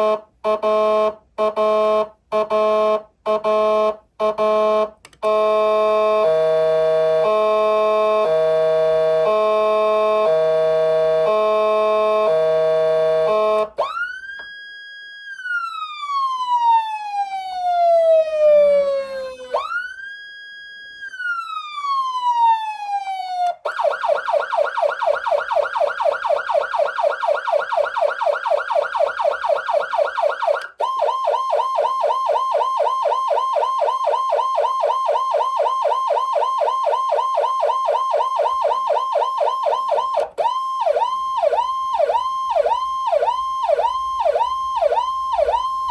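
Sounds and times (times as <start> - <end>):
electronic siren tones: 5.2 - 45.9.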